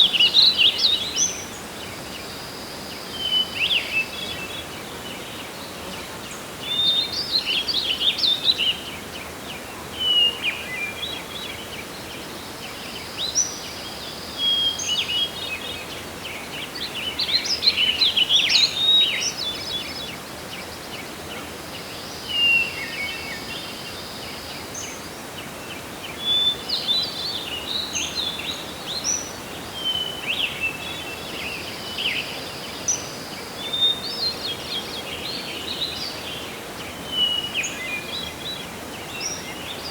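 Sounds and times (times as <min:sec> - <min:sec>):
songbirds chirping: 0:00.0 - 0:39.9.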